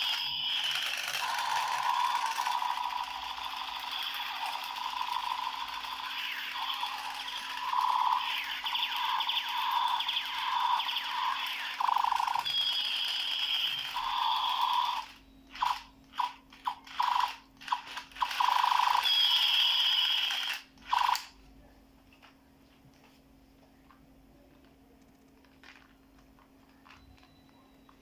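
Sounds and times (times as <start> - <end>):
toy gun firing buzzing bursts: 0.0 - 21.3.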